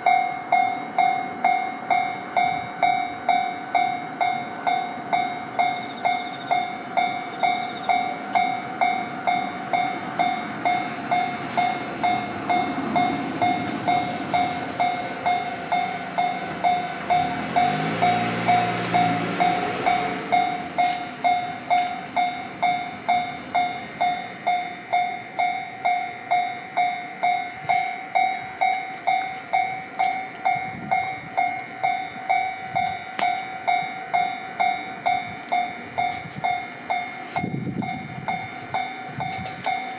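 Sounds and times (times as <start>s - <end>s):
level-crossing warning bell ringing: 0.0s - 39.9s
train rumbling past: 0.0s - 39.9s.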